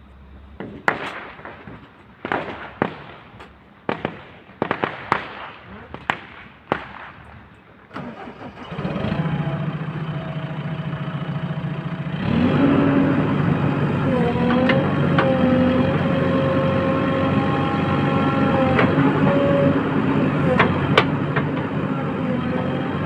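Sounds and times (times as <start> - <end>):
heavy diesel engine running: 7.9 - 23.0.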